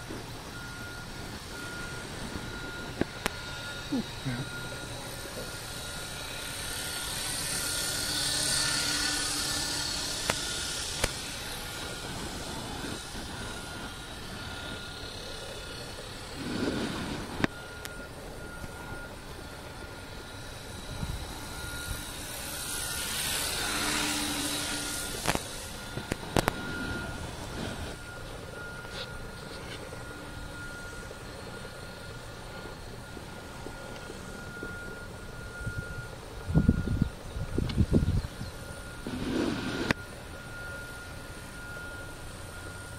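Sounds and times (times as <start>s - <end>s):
steady thin tone: 0.0s - 42.9s
model helicopter rotor hiss: 1.1s - 17.5s, 18.2s - 33.5s, 38.9s - 40.0s.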